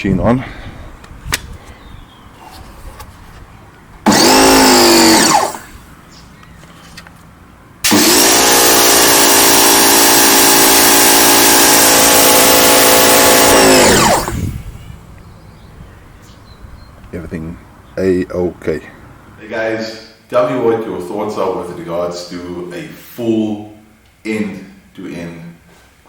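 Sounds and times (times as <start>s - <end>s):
pressure washer motor and pump: 4.1s - 5.8s, 7.8s - 14.8s.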